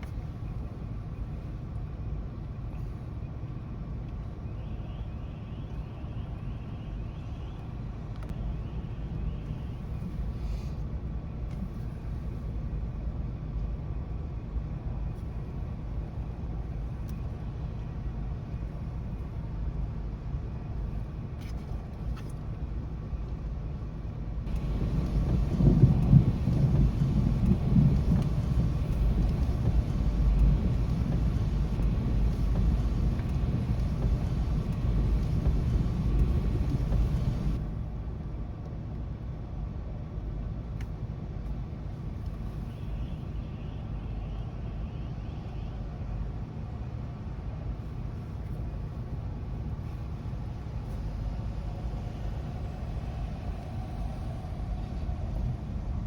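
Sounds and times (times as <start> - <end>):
hissing rain noise: 24.5 - 37.6
low thunder rumble: 24.5 - 37.6.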